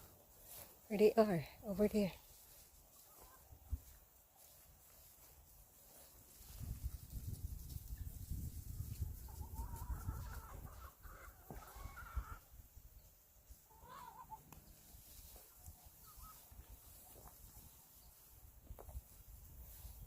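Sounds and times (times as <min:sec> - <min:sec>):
chickens calling: 0:02.4 - 0:04.3, 0:08.7 - 0:18.5.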